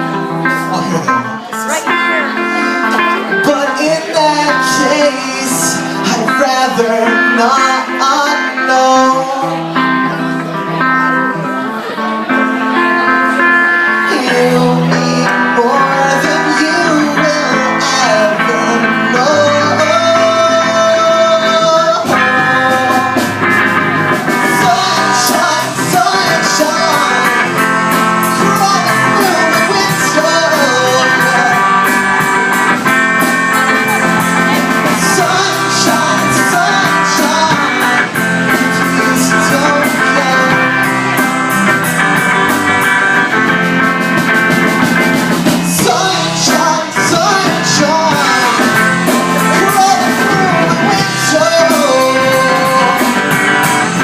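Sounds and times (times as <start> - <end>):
guitar: 0.0 - 54.0
rock song: 0.0 - 54.0
drums and cymbals: 22.0 - 54.0.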